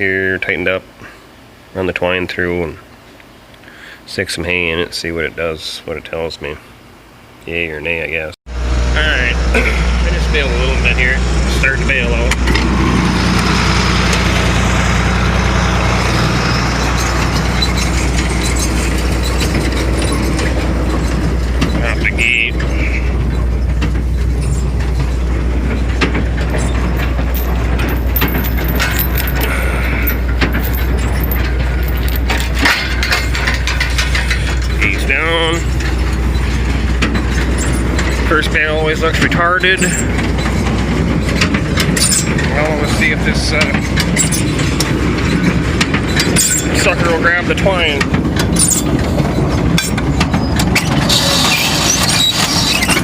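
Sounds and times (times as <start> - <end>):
tractor engine running: 8.5 - 53.0
baler knocking and clattering: 15.9 - 53.0.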